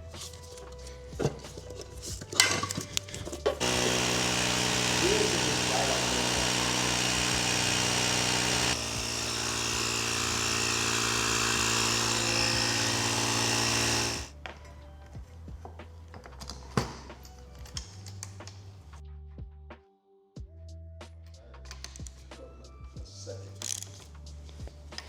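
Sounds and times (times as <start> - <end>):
background music: 0.0 - 25.0
loud steady noise: 3.6 - 14.3.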